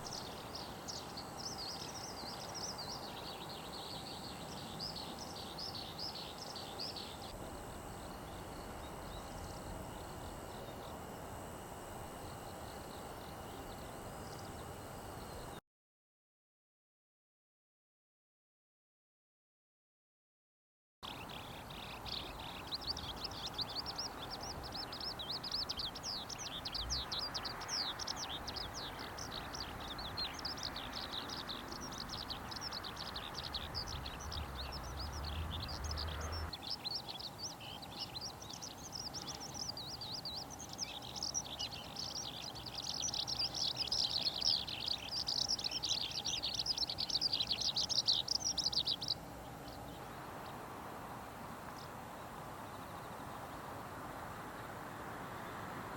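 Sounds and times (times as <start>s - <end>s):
skylark singing: 0.0s - 15.6s, 21.0s - 50.0s.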